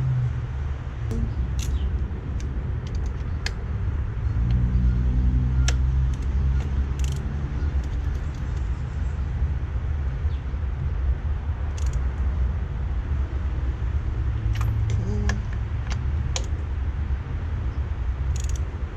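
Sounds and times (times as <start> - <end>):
steady low rumble: 0.0 - 18.9
metallic clicks of hand tools: 1.1 - 3.6, 5.6 - 8.7, 11.7 - 12.2, 14.5 - 16.6, 18.3 - 18.7.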